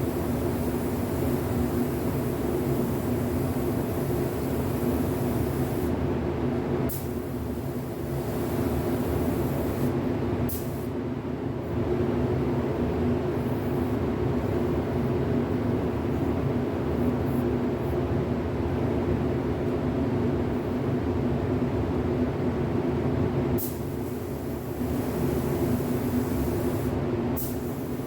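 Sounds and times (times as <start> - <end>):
paint spray gun hissing: 0.0 - 5.9, 6.9 - 9.9, 23.6 - 28.0.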